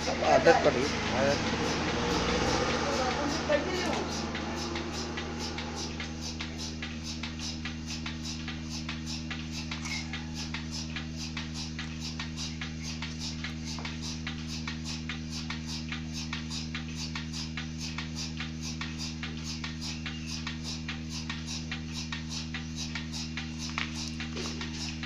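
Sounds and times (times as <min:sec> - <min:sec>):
milking pulsator ticking: 0:00.0 - 0:25.0
vacuum pump motor hum: 0:00.0 - 0:25.0.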